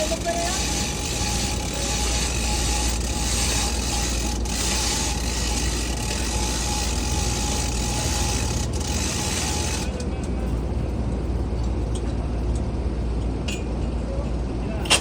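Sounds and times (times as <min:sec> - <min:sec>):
thin steady whine: 0:00.0 - 0:14.9
machine running with rumble: 0:00.0 - 0:15.0.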